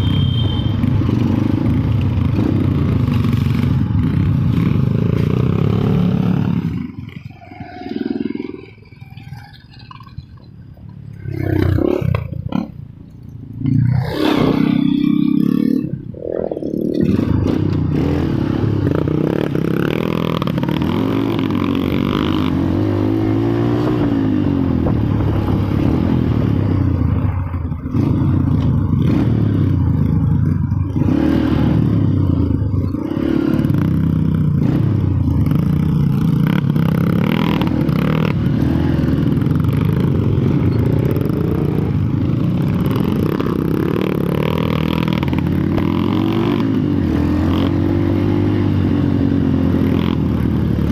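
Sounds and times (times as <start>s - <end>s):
engine revving: 13.9s - 26.6s, 27.9s - 29.8s, 30.9s - 50.9s.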